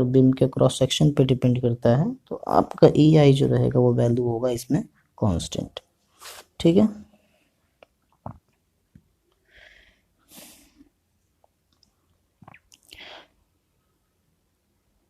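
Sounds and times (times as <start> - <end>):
faint breaths or sniffs: 9.4 - 11.0, 12.8 - 13.4.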